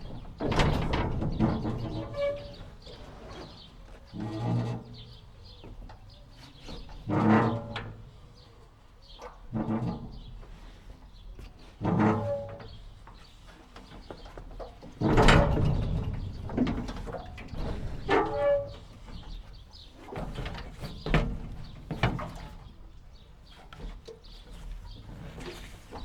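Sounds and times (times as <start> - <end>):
jetty creaking and squeaking: 0.0 - 3.2, 15.0 - 19.5.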